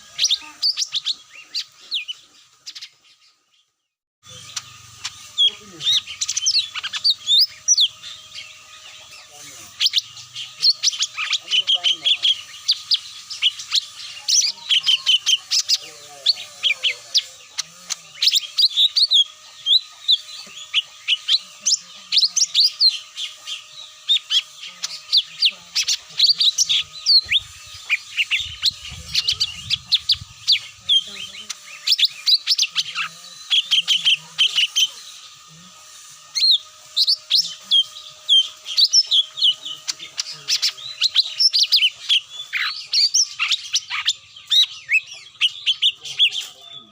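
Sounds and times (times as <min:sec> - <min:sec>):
small birds chirping and twittering: 0:00.0 - 0:46.9.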